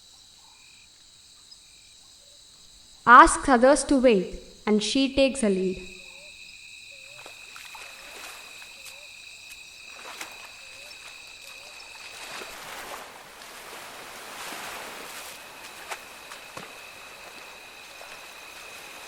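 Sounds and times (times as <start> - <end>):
insects droning: 0.0 - 19.0
rushing splashy noise: 11.9 - 19.0.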